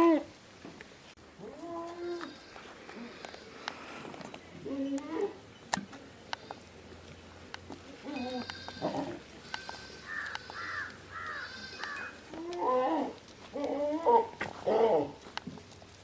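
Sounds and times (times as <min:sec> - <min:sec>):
goats bleating: 0:08.0 - 0:15.2.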